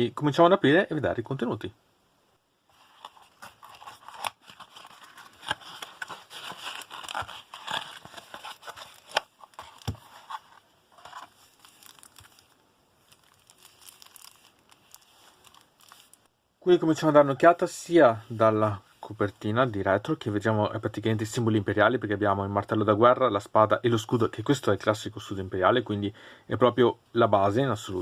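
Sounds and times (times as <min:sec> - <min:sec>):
cards rustling and clicking: 0:02.8 - 0:16.2
packaging tearing and crinkling: 0:03.1 - 0:16.3.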